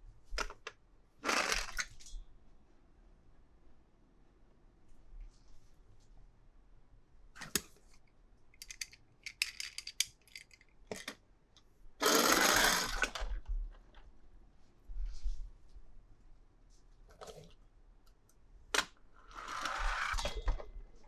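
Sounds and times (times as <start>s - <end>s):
packaging clicks and taps: 8.6s - 11.2s.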